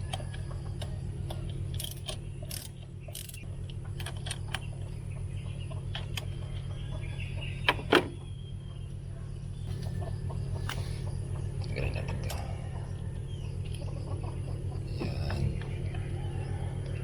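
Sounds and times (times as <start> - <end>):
hand tools clicking on metal: 0.0 - 3.4
steady low hum: 0.0 - 17.0.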